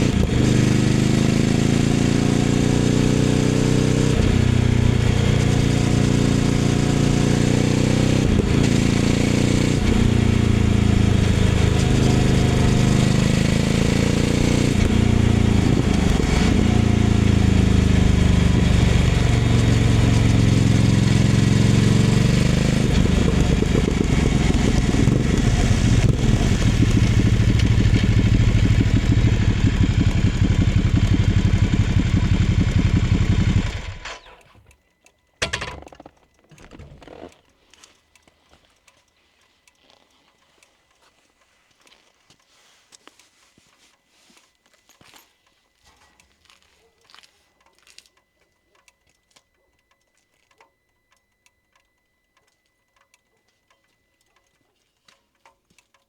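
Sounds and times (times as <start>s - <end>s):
motorcycle engine revving: 0.0s - 34.7s
gear changes: 0.0s - 39.1s.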